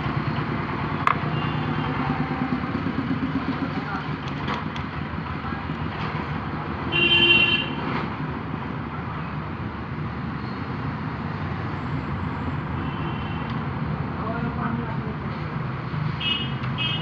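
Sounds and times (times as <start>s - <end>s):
road traffic noise: 0.0s - 17.0s
vehicle horn toot: 6.9s - 7.8s, 16.2s - 17.0s.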